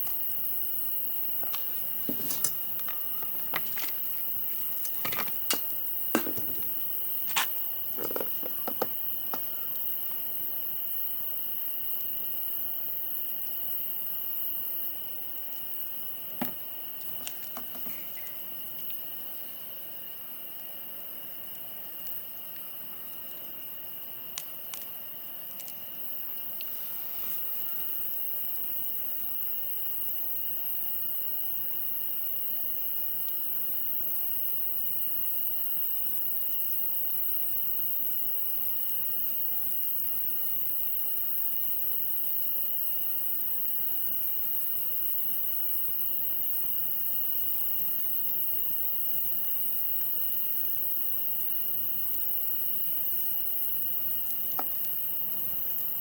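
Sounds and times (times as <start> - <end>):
high insect trill: 0.0 - 56.0
campfire burning: 0.2 - 10.5.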